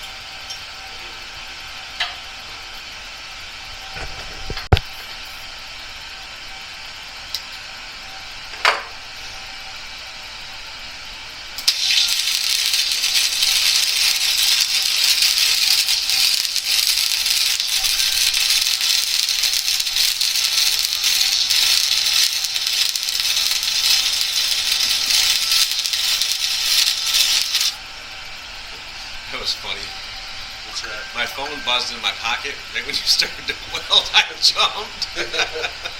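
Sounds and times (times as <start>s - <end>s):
welder arc crackling: 9.2s - 35.9s.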